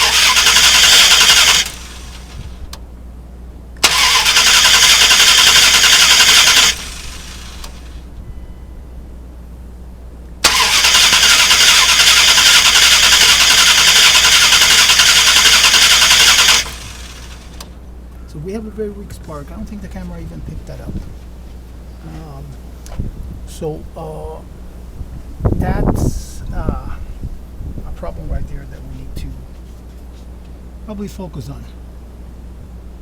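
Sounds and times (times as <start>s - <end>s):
starter motor cranking engine: 0.0s - 2.8s, 3.8s - 8.0s, 10.4s - 17.8s.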